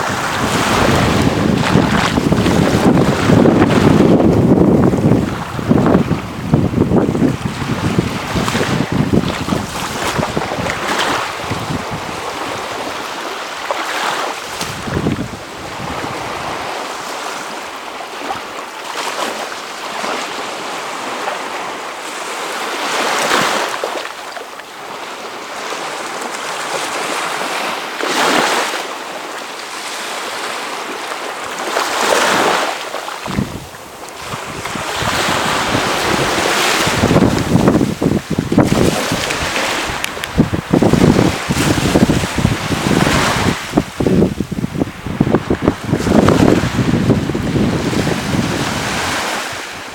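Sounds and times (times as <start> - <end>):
wind gusts on microphone: 0.0 - 18.5, 31.4 - 49.9
steady wind: 0.0 - 18.7, 24.7 - 49.9
sea waves breaking: 0.0 - 49.9.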